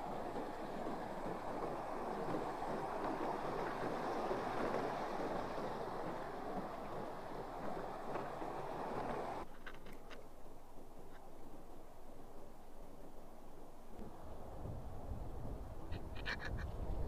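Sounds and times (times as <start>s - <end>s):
steady rushing noise: 0.0s - 9.5s.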